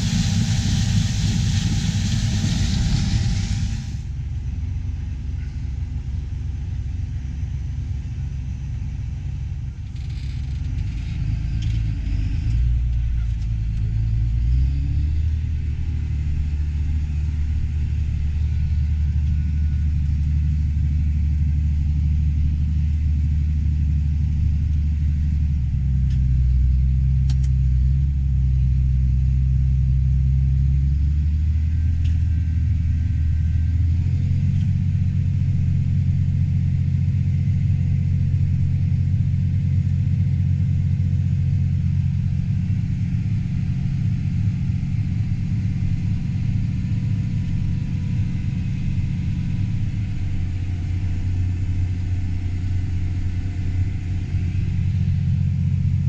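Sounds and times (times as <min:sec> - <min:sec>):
harvest machinery rumbling: 0:00.0 - 0:04.2.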